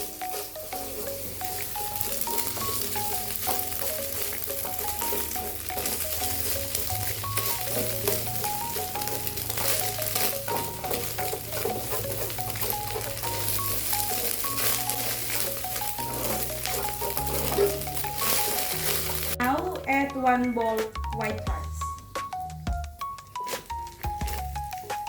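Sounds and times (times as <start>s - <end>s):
food sizzling in hot oil: 0.0s - 19.4s
spatula scraping a pan: 0.0s - 19.4s
simple melody with bass line: 0.0s - 25.0s.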